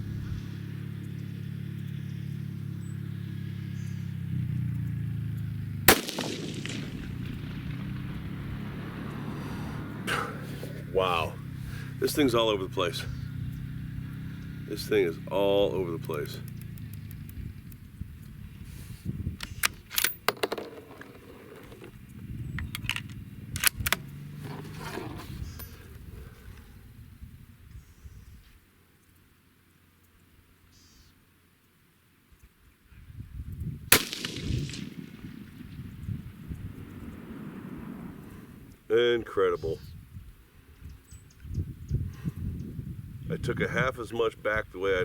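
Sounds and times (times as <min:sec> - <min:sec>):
steady low hum: 0:00.0 - 0:20.3, 0:33.1 - 0:45.0
rifle shot with echo: 0:05.9 - 0:09.4, 0:33.9 - 0:38.6
rifle clicks and rattles: 0:19.4 - 0:21.9, 0:22.6 - 0:25.8.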